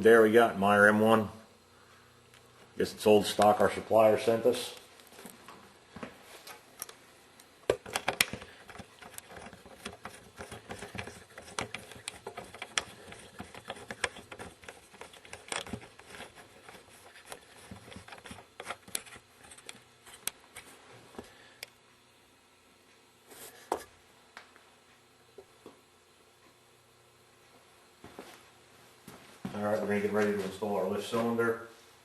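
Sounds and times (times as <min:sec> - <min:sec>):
tools clicking and knocking on metal: 0:07.7 - 0:20.4.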